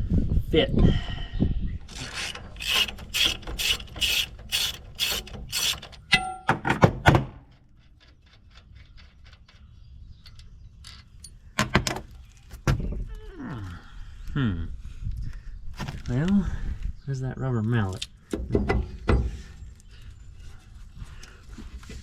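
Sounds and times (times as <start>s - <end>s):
file scraping steel: 2.0s - 6.1s.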